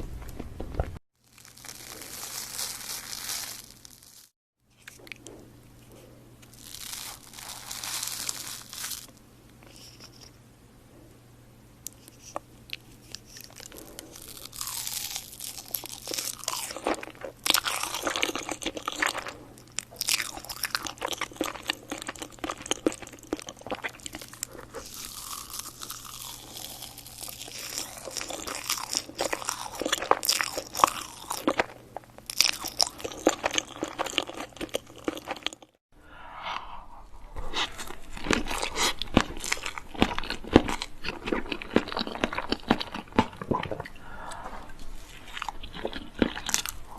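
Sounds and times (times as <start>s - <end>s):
eating crunchy pastry: 0.3s - 10.3s, 12.0s - 35.8s, 37.4s - 44.1s, 44.8s - 46.9s.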